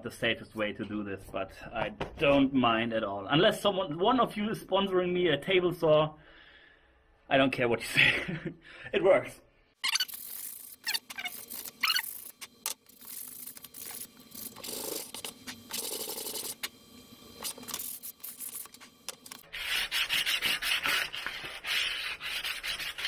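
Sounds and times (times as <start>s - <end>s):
sanding foam with rasping strokes: 19.4s - 23.0s.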